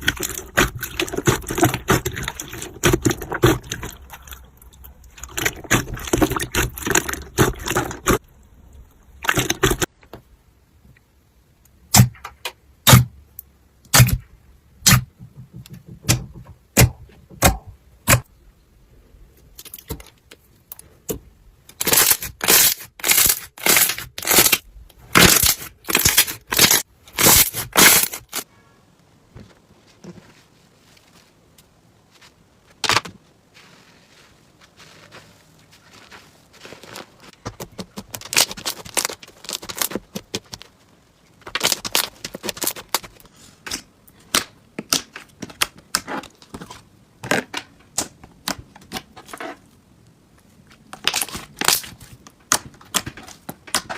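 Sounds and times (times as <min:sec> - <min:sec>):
slime crackling and popping: 0:21.7 - 0:28.4, 0:36.7 - 0:40.8.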